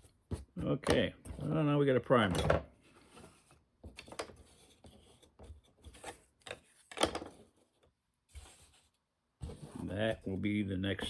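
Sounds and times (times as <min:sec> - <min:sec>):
soft rubbing of small items: 0:02.8 - 0:11.0.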